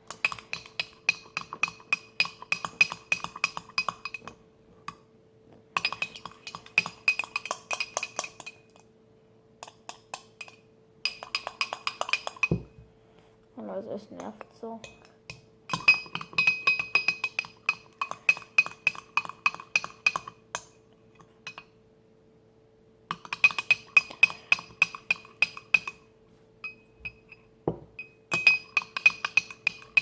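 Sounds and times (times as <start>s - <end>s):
faint steady hum: 0.0s - 30.0s
utensil clinking against glass: 0.1s - 4.4s, 5.8s - 8.8s, 9.6s - 12.7s, 15.7s - 21.7s, 23.1s - 26.0s, 28.0s - 30.0s.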